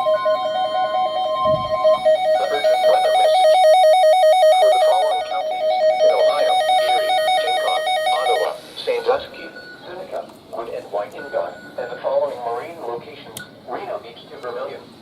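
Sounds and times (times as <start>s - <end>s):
two-pitch electronic warble: 0.0s - 8.5s
steady warning alarm tone: 0.0s - 12.9s.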